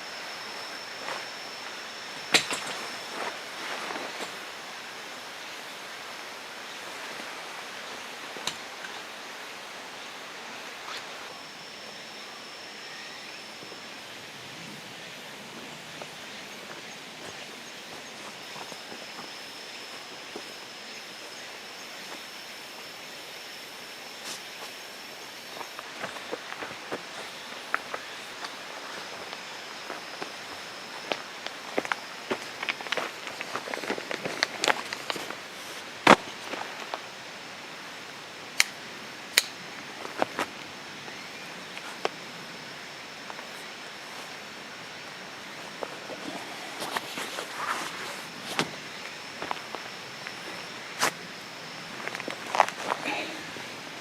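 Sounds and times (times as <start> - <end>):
insect calling steady high note: 0.0 - 54.0
steady background hiss: 0.0 - 54.0.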